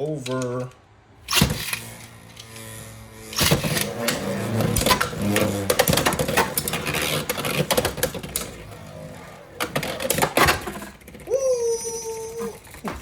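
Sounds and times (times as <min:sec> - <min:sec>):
spinning tops whirring: 0:01.3 - 0:10.2.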